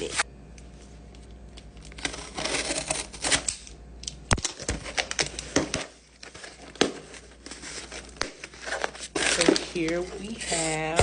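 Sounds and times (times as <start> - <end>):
package being opened: 4.3 - 10.6
packaging rustling: 4.4 - 11.0.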